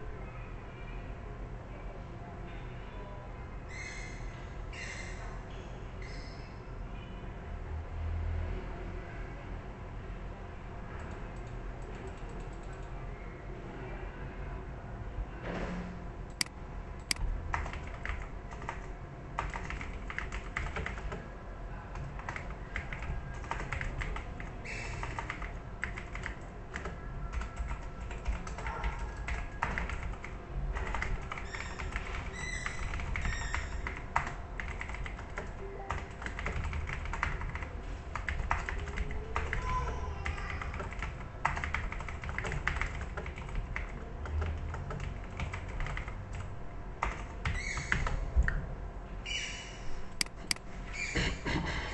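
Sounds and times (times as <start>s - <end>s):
typing on a keyboard: 11.0s - 13.0s, 16.3s - 21.2s, 21.9s - 48.2s.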